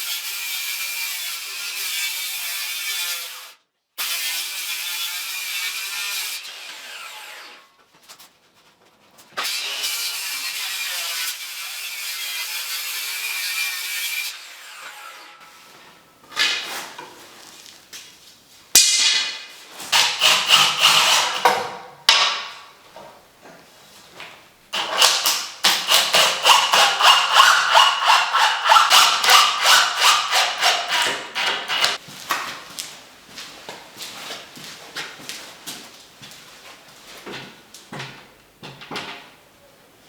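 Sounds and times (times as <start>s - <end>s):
hand saw cutting wood: 0.0s - 8.3s, 9.4s - 15.8s, 19.8s - 22.6s, 24.7s - 32.0s.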